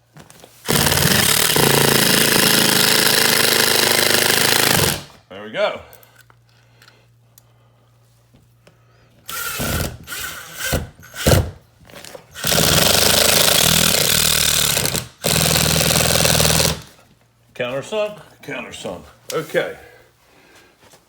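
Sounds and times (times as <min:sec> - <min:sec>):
cordless drill driving screws: 0:00.7 - 0:05.1, 0:09.3 - 0:11.6, 0:12.3 - 0:16.9.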